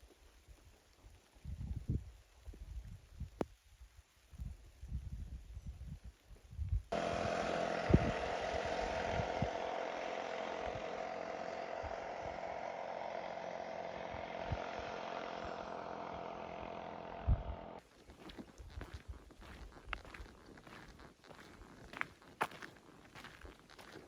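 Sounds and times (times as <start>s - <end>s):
motor droning: 6.9s - 17.8s.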